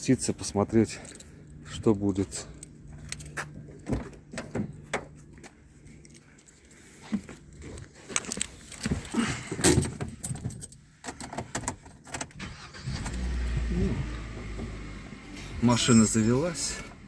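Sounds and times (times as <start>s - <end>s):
car keys jangling: 0.9s - 3.8s, 4.7s - 6.8s, 7.4s - 13.4s
car engine starting and running: 8.2s - 17.0s.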